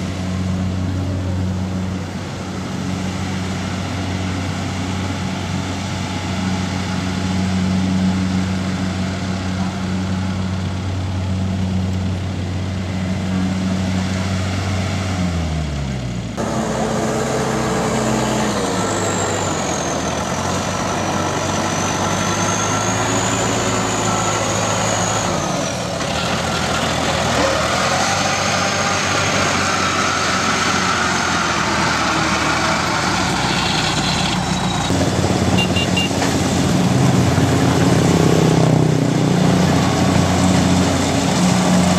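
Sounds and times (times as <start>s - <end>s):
combine harvester engine running: 0.0s - 41.9s.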